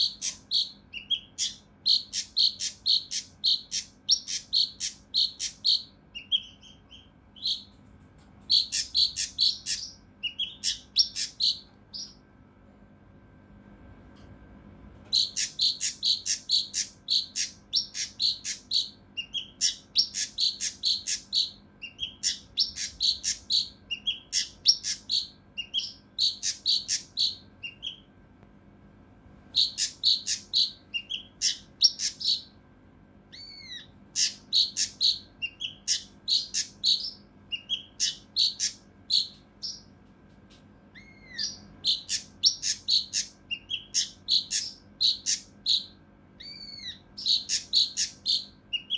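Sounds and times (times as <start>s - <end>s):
bird curved whistles: 33.4s - 39.8s.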